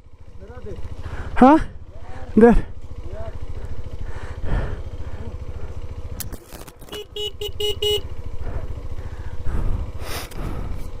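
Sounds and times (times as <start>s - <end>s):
motorcycle engine running: 0.0s - 11.0s
horn short toots: 6.8s - 8.3s.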